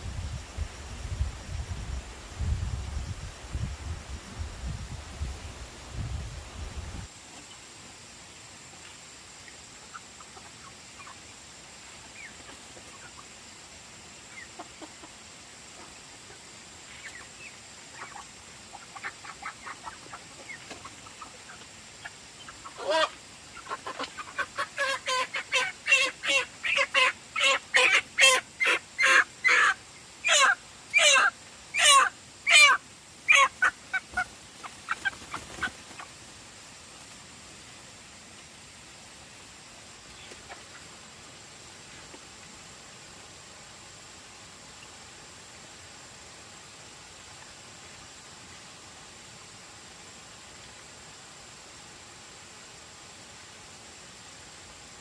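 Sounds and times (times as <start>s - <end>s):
chicken clucking and squawking: 9.5s - 11.4s, 12.0s - 13.4s, 14.2s - 36.2s, 40.1s - 41.0s.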